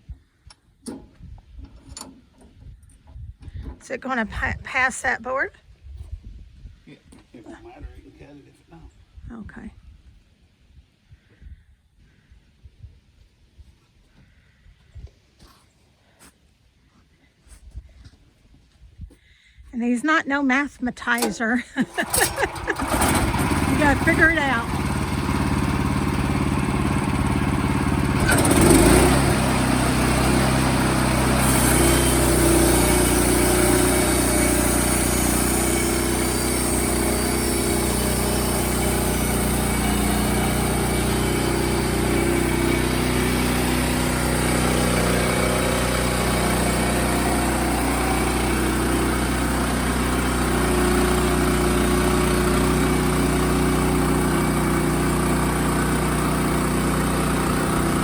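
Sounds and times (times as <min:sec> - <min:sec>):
sawmill engine running: 0:22.0 - 0:58.0
high hiss of blade cutting: 0:31.4 - 0:40.0.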